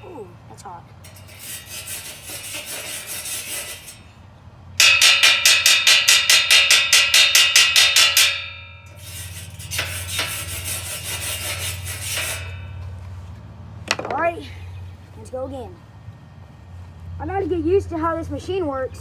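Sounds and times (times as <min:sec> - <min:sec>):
scraping and scrubbing metal: 0:01.0 - 0:04.2, 0:04.8 - 0:13.3
ringing metal-on-metal strikes: 0:04.8 - 0:10.6.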